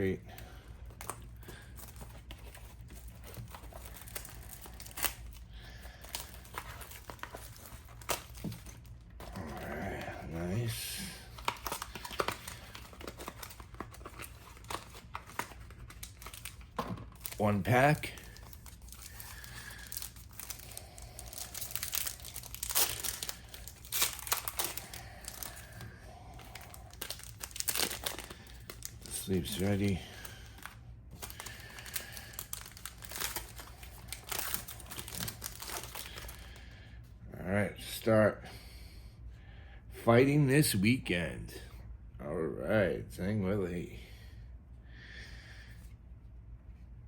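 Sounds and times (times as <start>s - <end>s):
wrapping crinkling and tearing: 0.0s - 36.7s.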